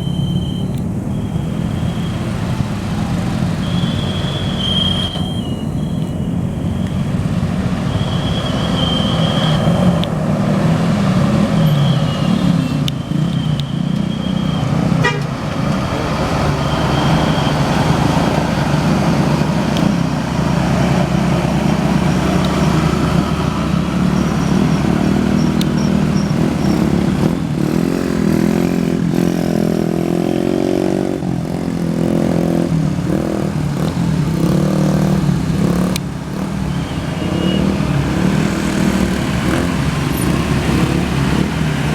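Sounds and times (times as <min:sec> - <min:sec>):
bus engine rumble: 0:00.0 - 0:41.9
bus multi-tone horn tune: 0:11.6 - 0:19.4, 0:36.6 - 0:41.4.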